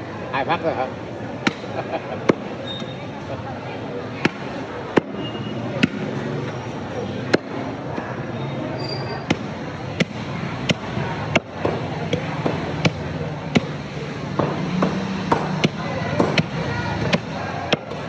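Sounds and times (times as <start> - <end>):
cleaver chopping meat on block: 9.3 - 18.0.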